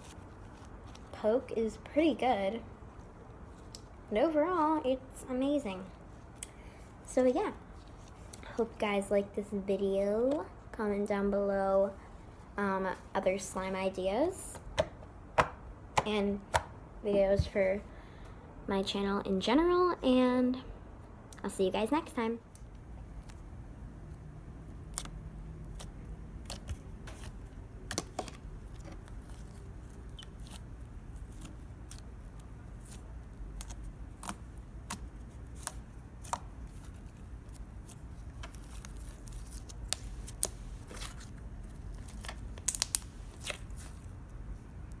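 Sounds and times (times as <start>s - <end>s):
low steady hum: 0.0s - 45.0s
slime clicking and crackling: 24.1s - 44.2s.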